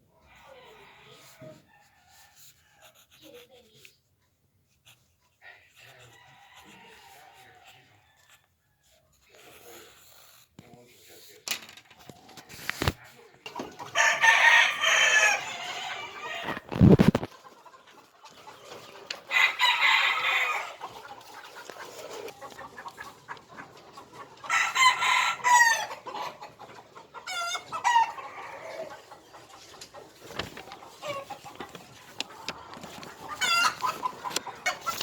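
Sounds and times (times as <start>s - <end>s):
rooster crowing: 6.1s - 8.4s, 13.9s - 16.6s, 19.3s - 20.8s, 24.5s - 26.0s.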